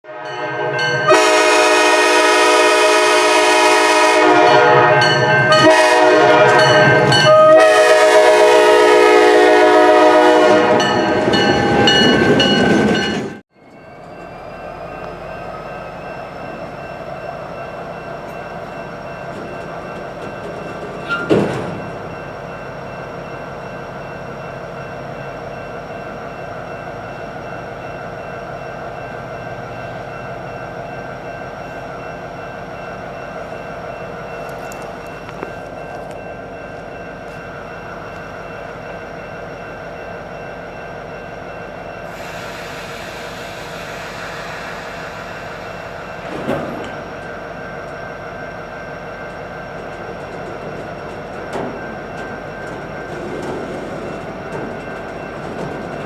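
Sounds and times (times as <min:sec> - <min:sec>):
locomotive air horn blasts: 0:01.1 - 0:11.0.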